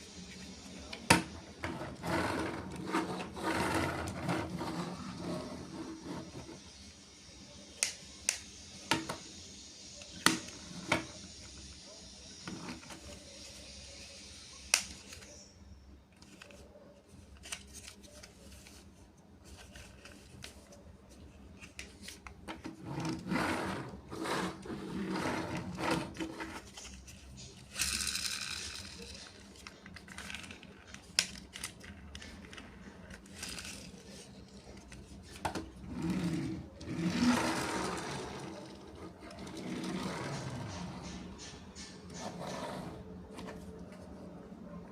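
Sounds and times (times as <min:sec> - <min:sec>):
packaging rustling and scraping: 0:16.2 - 0:41.5.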